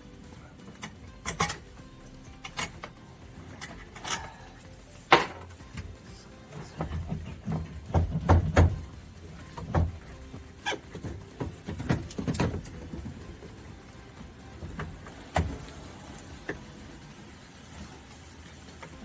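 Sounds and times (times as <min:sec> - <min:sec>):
hand tools and metal parts clicking: 0:00.0 - 0:16.7
dull thumps: 0:05.1 - 0:13.7.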